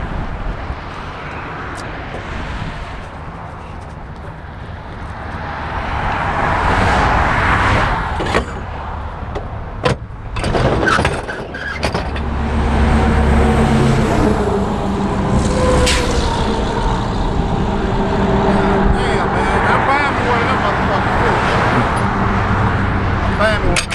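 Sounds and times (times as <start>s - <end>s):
vehicle passing: 0.0s - 10.4s, 12.0s - 23.9s
heavy vehicle engine hum: 0.0s - 23.9s
sharp knocks and clicks: 9.3s - 12.3s.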